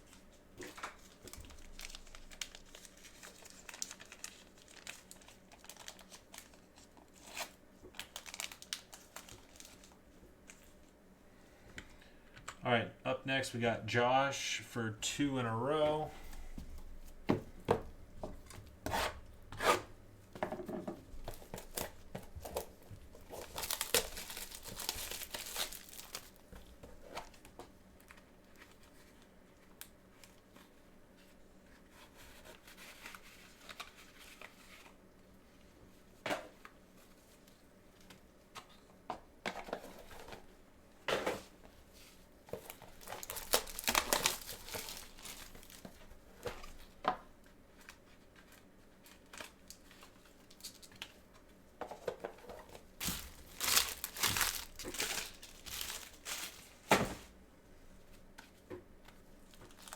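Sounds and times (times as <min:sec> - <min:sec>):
plastic wrapping crinkling and tearing: 0:00.1 - 0:10.7, 0:21.2 - 0:26.5, 0:42.6 - 0:46.9, 0:48.6 - 0:51.2, 0:52.7 - 0:56.9, 0:59.4 - 0:59.9.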